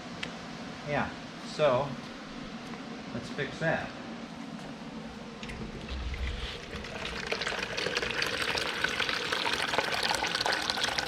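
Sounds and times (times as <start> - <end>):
water pouring and splashing: 5.4 - 11.0.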